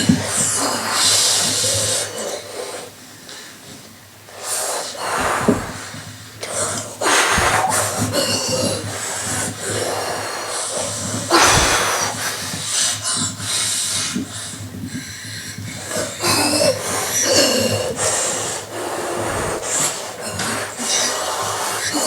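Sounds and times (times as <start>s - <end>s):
ceiling fan humming: 0.0s - 22.0s.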